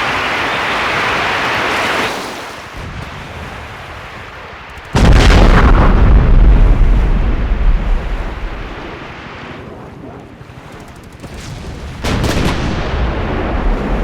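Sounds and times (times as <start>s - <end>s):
rushing noise: 4.9s - 9.4s
deep rumble: 5.0s - 9.0s, 12.2s - 14.0s
loud explosion: 5.0s - 9.0s, 11.6s - 14.0s.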